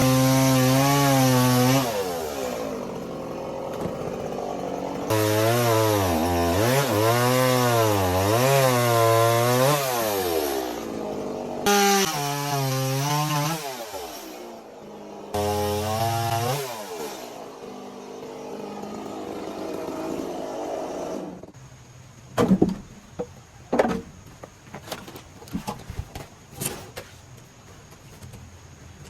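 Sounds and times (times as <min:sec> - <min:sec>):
chainsaw cutting wood: 0:00.0 - 0:21.6.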